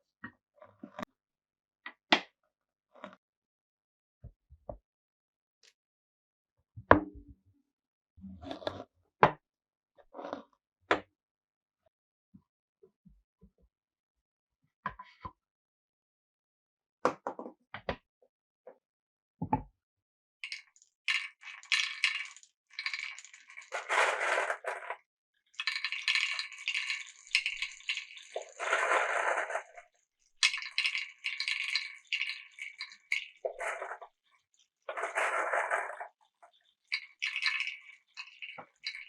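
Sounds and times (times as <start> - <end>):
marbles clicking on wood: 20.4 - 25.0, 25.6 - 34.1, 34.9 - 39.0
marbles rolling in channels: 20.4 - 39.0.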